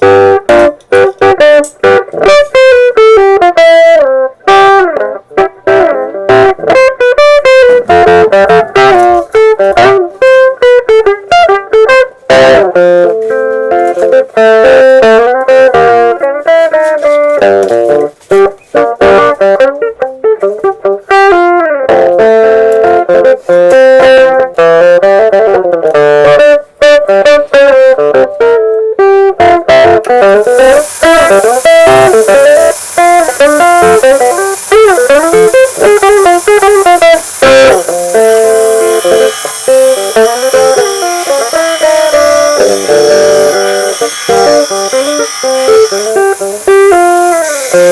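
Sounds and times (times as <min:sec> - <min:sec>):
guitar picking quick melody: 0:00.0 - 0:47.9
light hiss: 0:30.1 - 0:47.9.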